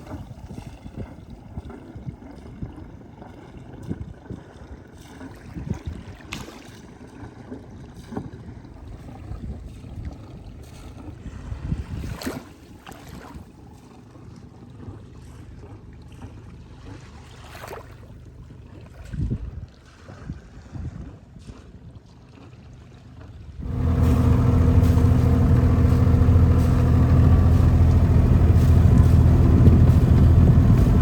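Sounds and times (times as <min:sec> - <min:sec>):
water splashing against hull: 0:00.0 - 0:13.6, 0:16.1 - 0:18.2, 0:23.6 - 0:31.0
low rumble of water: 0:00.0 - 0:31.0
heavy thump: 0:23.6 - 0:31.0
wind on microphone: 0:23.6 - 0:31.0.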